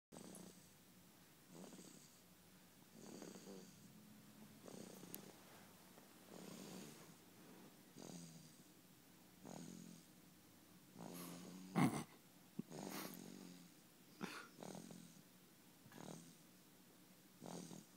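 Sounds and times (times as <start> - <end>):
soft rhythmic snoring: 0.1 - 8.8, 9.4 - 10.2, 10.9 - 16.6, 17.4 - 17.9
loud snort: 9.4 - 10.0, 11.0 - 13.6, 14.2 - 15.2, 15.9 - 16.4, 17.4 - 17.9.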